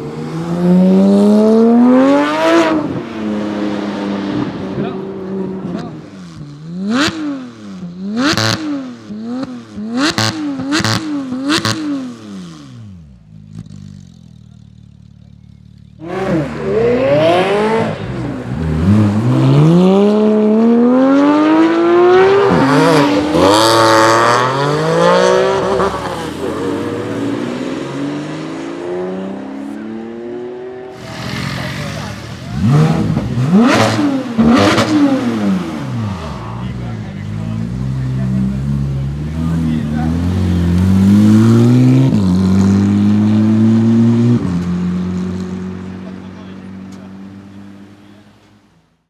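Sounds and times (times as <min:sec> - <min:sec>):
car accelerating through gears: 0:00.0 - 0:12.9, 0:16.0 - 0:48.5
sports car engine revving: 0:00.0 - 0:48.5
exhaust cracks: 0:30.9 - 0:43.3.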